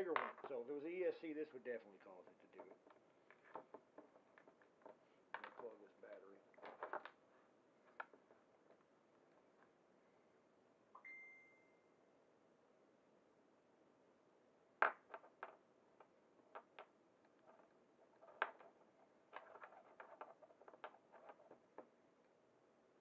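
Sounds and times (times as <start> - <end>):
short electronic beep: 11.0 - 11.9.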